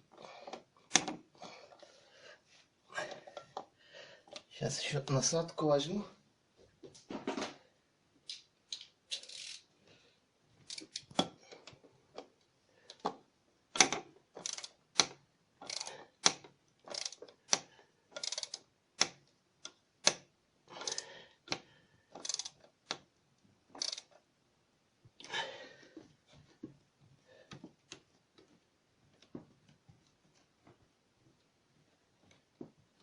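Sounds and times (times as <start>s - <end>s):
small hard tools clicking: 8.3s - 9.7s, 10.6s - 12.3s, 13.8s - 20.2s, 20.8s - 23.0s, 23.8s - 24.2s.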